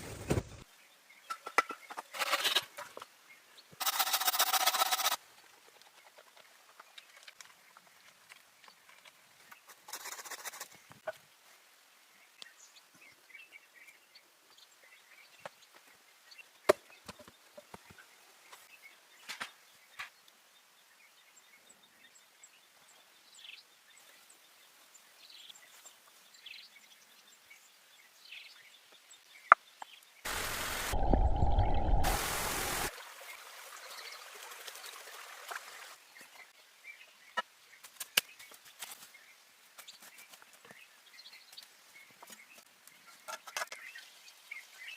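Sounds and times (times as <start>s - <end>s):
loud burst of noise: 30.3s - 32.9s.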